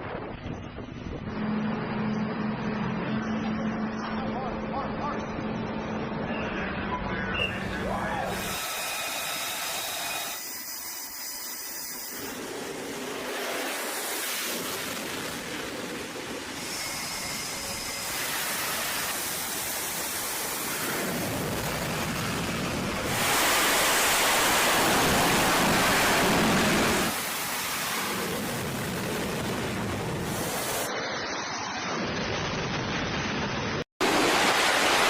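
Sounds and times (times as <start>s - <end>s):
jet engine rushing hiss: 8.2s - 31.6s.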